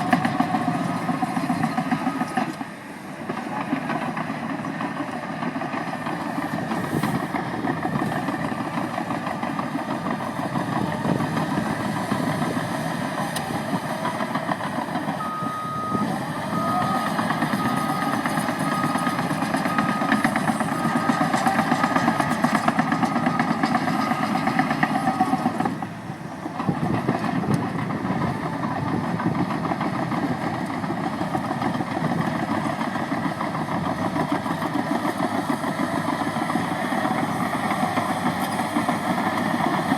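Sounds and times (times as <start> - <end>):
diesel engine running: 0.0 - 39.9
reversing alarm beeps: 1.8 - 2.6, 15.2 - 22.0, 22.9 - 25.5.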